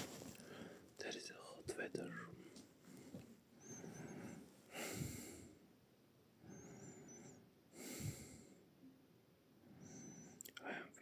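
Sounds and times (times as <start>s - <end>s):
person breathing: 0.0s - 0.9s, 2.4s - 5.6s, 6.4s - 8.7s.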